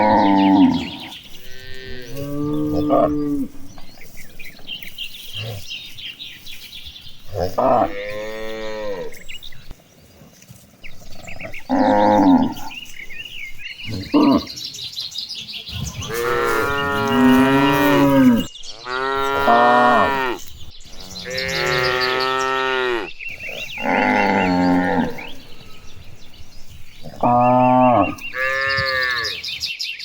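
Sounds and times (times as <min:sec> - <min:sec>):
cattle mooing: 0:00.0 - 0:04.2, 0:07.3 - 0:09.3, 0:11.3 - 0:12.8, 0:16.0 - 0:20.4, 0:21.0 - 0:29.4.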